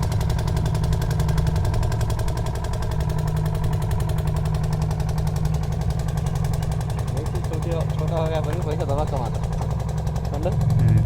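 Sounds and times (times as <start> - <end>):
small boat engine running: 0.0 - 11.0.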